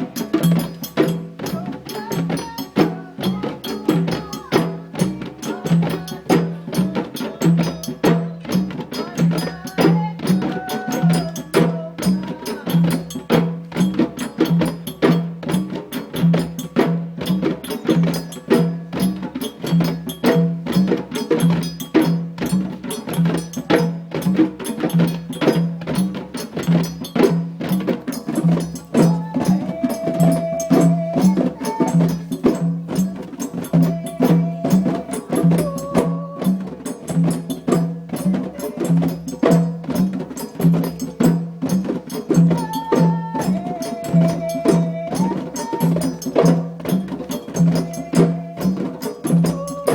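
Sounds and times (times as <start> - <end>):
djembe drumming: 0.0 - 49.9.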